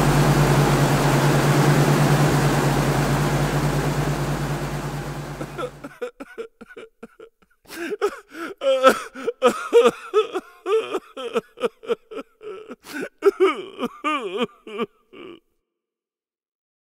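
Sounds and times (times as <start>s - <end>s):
helicopter cabin drone: 0.0s - 5.9s.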